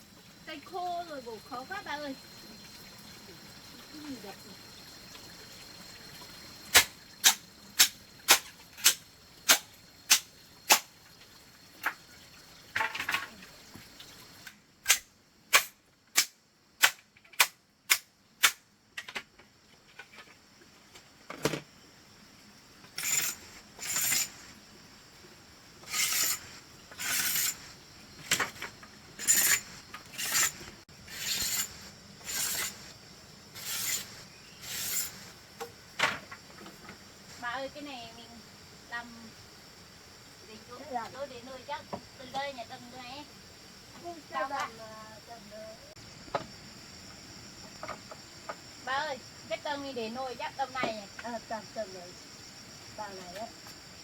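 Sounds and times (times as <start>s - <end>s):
blade chopping dry bamboo: 6.7s - 10.9s, 14.8s - 18.6s
blade scraping bamboo: 6.7s - 10.9s, 22.9s - 24.6s, 25.8s - 35.4s.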